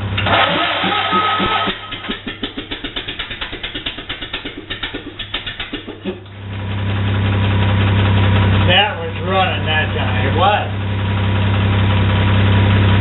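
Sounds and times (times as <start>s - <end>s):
engine cranking on starter: 0.0s - 6.5s
engine running with steady drone: 0.0s - 13.0s.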